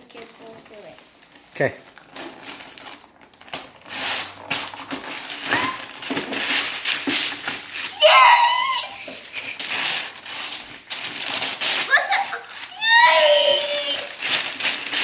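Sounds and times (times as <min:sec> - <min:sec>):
child's voice: 0:00.0 - 0:01.0, 0:07.9 - 0:09.2, 0:11.8 - 0:14.2
cardboard box being torn open: 0:02.2 - 0:15.0.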